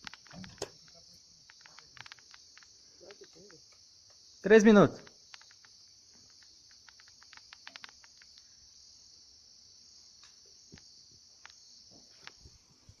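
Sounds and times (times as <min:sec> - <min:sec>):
crickets chirring: 0:00.0 - 0:13.0
soft clicks: 0:05.0 - 0:08.5.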